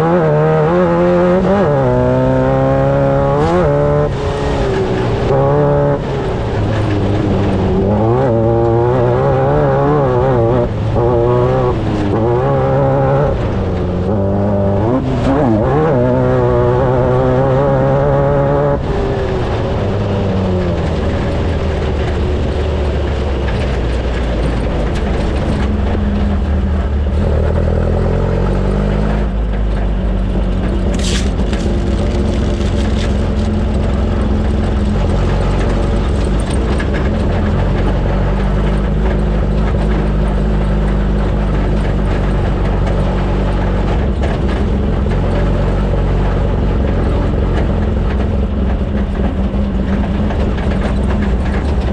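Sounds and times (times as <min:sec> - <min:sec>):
race vehicle engine revving: 0:00.0 - 0:51.9.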